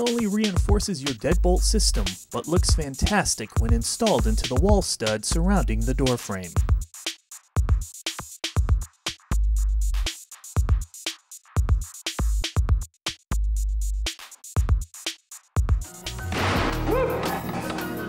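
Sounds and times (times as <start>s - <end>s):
drum machine beat: 0.0s - 18.0s
sustained bass notes: 0.6s - 2.9s, 3.6s - 6.1s.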